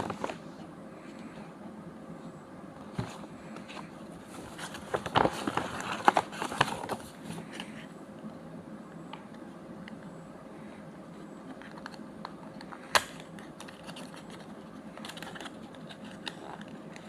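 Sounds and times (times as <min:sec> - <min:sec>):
soft handling noises: 0:02.2 - 0:08.0
packaging clicks and crackling rustles: 0:03.0 - 0:07.7, 0:11.5 - 0:17.0.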